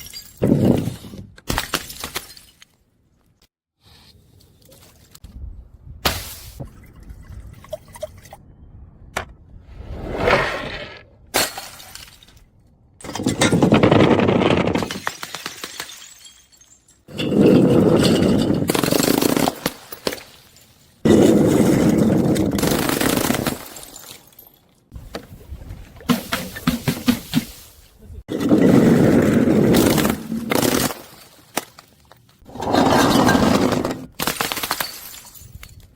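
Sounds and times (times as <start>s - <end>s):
glass bottles crushing and shattering: 0.0s - 2.8s, 13.0s - 24.7s, 32.5s - 35.9s.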